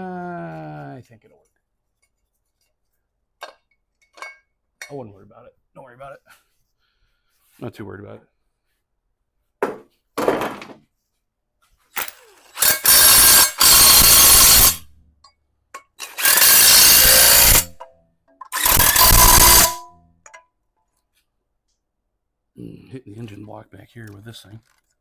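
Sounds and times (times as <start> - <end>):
handheld power tool running: 12.0 - 14.9, 16.0 - 17.8, 18.5 - 19.8.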